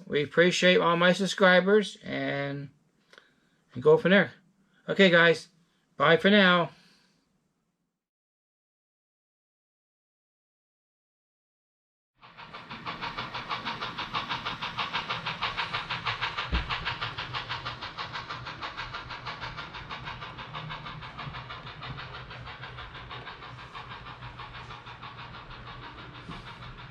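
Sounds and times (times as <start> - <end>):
train low hum: 0.0 - 2.7, 3.7 - 6.9, 12.2 - 26.9
train wheels clattering: 12.2 - 26.9.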